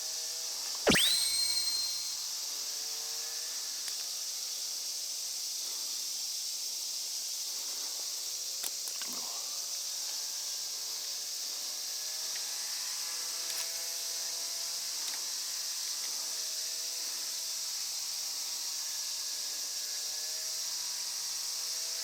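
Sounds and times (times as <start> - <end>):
high whistle-like call: 0.9 - 2.1.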